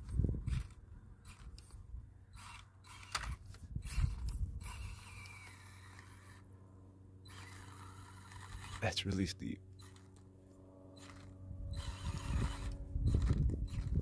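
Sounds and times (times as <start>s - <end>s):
toy car motor whirring: 0.0s - 6.5s, 7.2s - 9.0s, 9.7s - 10.3s, 10.9s - 14.0s
tires clicking over rough ground: 11.0s - 14.0s.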